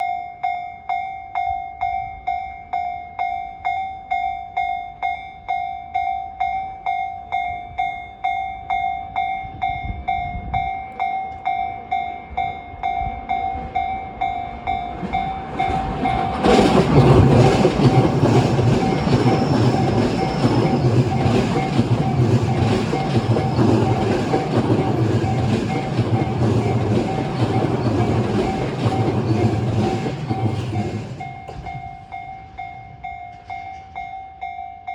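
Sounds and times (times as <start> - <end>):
level crossing warning bell: 0.0 - 34.9
train wheels clacking over rail joints: 13.3 - 34.0.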